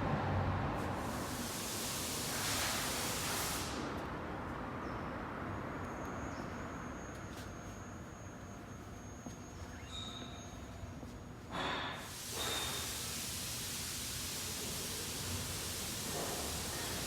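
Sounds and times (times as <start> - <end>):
hiss: 0.8 - 4.0, 11.5 - 17.0.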